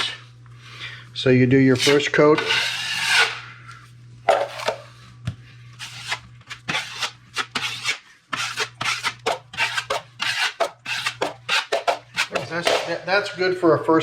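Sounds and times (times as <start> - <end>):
trowel scraping joint compound: 1.8 - 3.4, 5.8 - 12.9.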